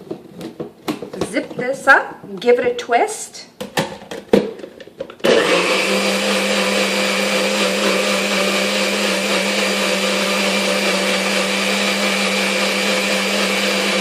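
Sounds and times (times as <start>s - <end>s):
blender motor running: 5.2s - 14.0s.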